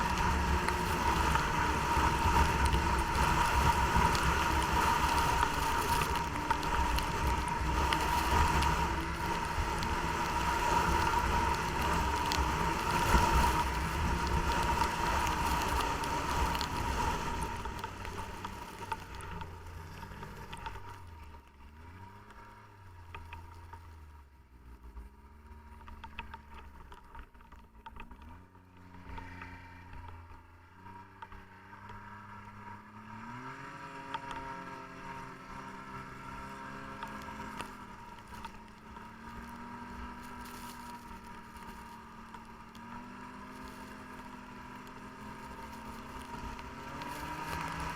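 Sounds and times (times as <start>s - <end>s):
snowmobile engine revving: 0.0s - 21.0s, 30.8s - 47.9s.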